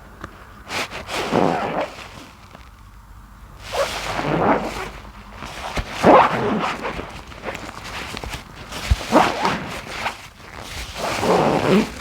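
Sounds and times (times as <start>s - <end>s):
wet sponge squeezed: 3.6s - 12.0s.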